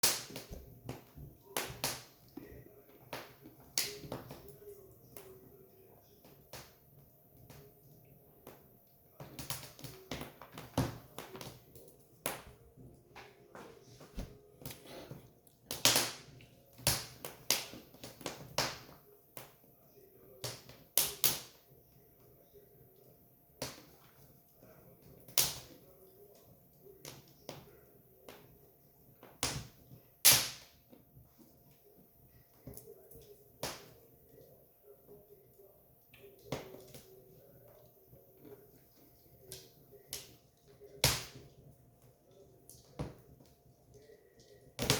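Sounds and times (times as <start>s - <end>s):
sharp pops and snaps: 0.0s - 2.2s, 3.1s - 4.5s, 15.7s - 19.6s, 25.3s - 25.8s, 29.4s - 30.8s.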